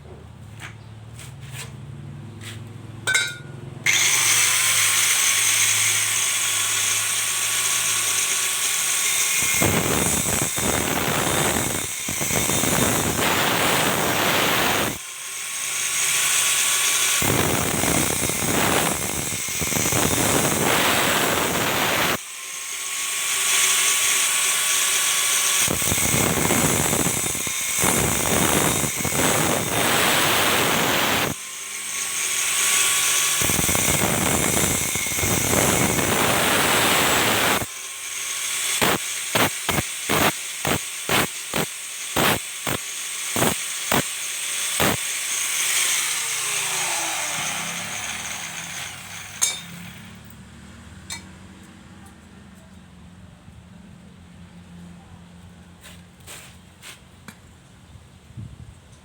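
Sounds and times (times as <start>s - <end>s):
metal clinks: 3.1s - 3.6s
disc cutter grinding steel: 3.1s - 50.3s.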